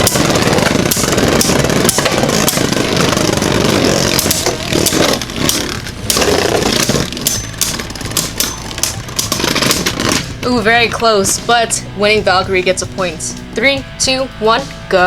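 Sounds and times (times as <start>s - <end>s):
spinning tops clacking together: 0.0s - 11.5s
spinning tops whirring: 0.0s - 13.6s.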